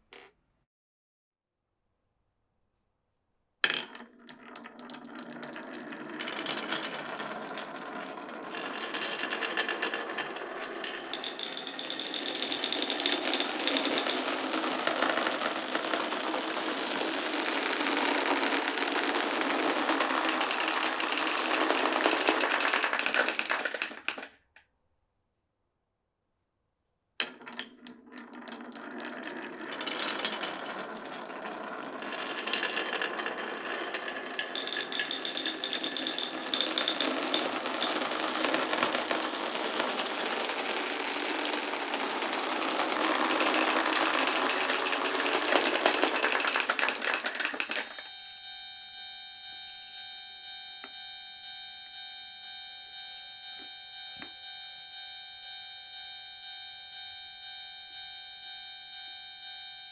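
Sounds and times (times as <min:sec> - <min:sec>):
marbles clattering down tracks: 0:03.6 - 0:24.3, 0:27.2 - 0:48.0.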